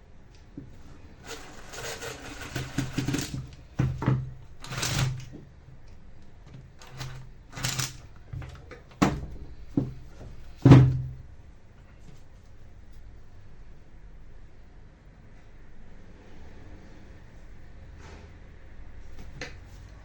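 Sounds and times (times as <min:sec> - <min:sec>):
scraping and rustling: 0:00.6 - 0:05.5.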